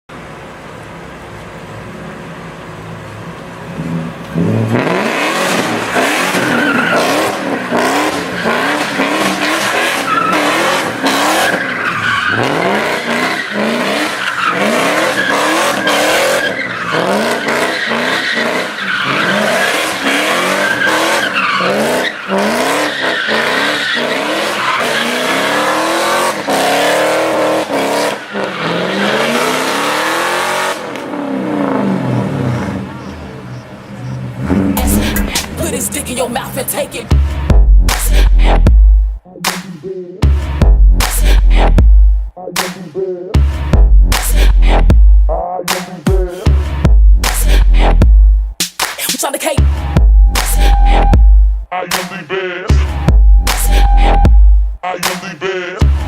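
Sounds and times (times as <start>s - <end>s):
car engine revving: 1.6s - 49.0s, 49.6s - 56.0s
tyres squealing: 6.1s - 26.5s.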